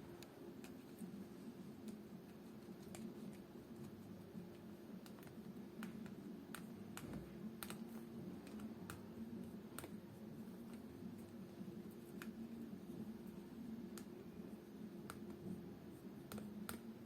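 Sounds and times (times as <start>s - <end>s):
steady low hum: 0.0s - 17.0s
light clicks and taps of tools: 1.8s - 10.0s.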